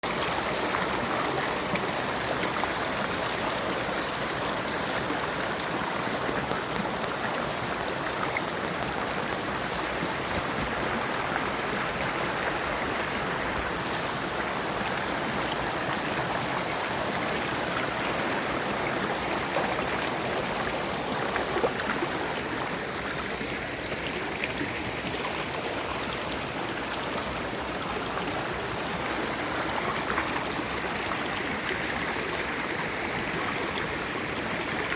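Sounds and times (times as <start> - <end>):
stream water rushing: 0.0 - 34.9.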